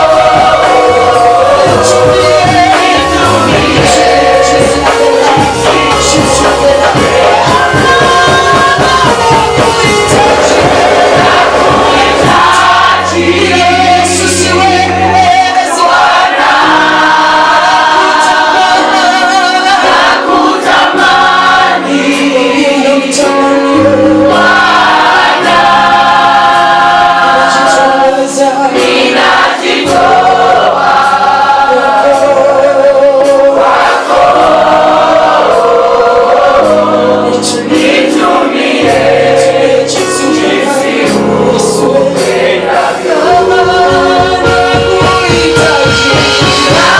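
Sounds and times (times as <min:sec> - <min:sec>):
low bass notes: 0:00.0 - 0:15.1
group singing gospel song: 0:00.0 - 0:46.9
instrumental backing: 0:00.0 - 0:46.9.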